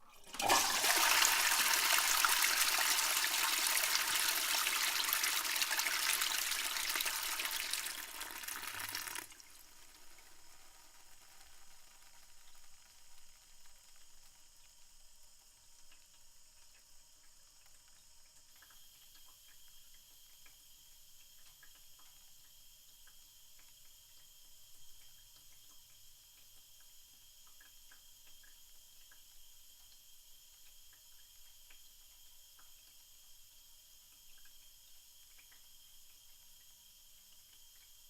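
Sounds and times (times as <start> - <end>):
toilet cistern refilling: 0.0 - 11.3.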